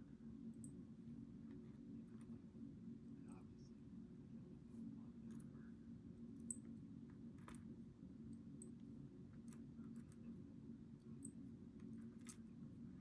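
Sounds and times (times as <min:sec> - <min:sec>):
low steady hum: 0:00.0 - 0:13.0
small clicks of lock parts: 0:06.4 - 0:06.7, 0:12.2 - 0:12.5.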